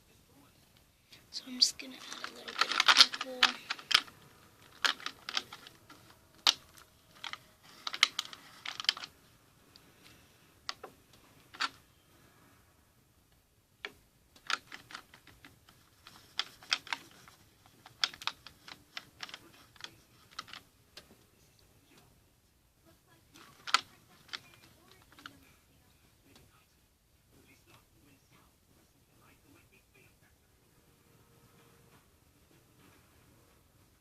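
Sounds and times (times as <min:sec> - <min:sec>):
plastic containers clicking: 0:01.8 - 0:09.1, 0:14.4 - 0:20.6, 0:23.4 - 0:25.3.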